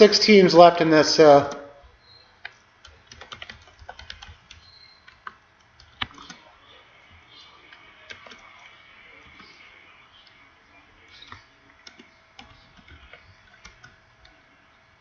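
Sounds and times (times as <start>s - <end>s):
typing on a keyboard: 2.4s - 6.5s, 7.6s - 9.6s, 11.1s - 14.4s.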